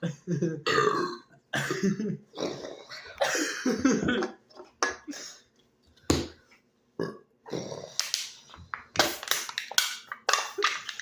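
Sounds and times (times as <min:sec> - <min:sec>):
man burping: 0:00.0 - 0:04.4, 0:07.0 - 0:08.0.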